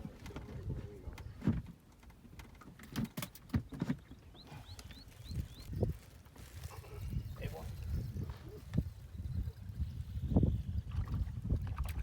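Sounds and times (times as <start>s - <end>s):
bird chirping: 3.7s - 6.0s.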